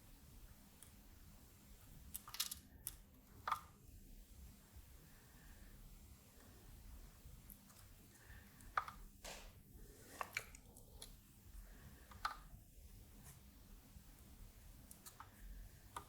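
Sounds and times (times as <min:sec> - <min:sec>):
soldering clicks and crackles: 0:00.4 - 0:03.8, 0:06.4 - 0:11.3, 0:11.9 - 0:16.0.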